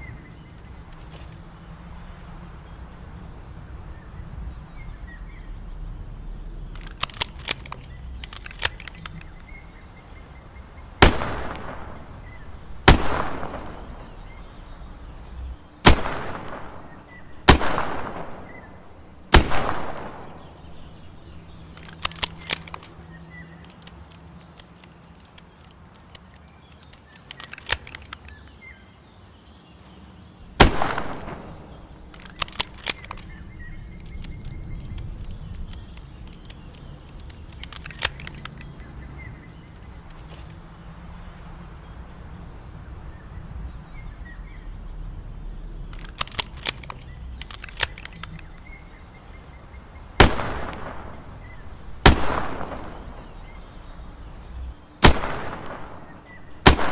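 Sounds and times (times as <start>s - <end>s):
small sharp clicks: 0.4s - 1.7s, 6.6s - 28.6s, 30.6s - 40.8s, 45.7s - 56.9s
revolver shots with echo: 11.0s - 14.6s, 15.8s - 20.9s, 30.6s - 32.1s, 50.2s - 53.8s, 55.0s - 56.9s.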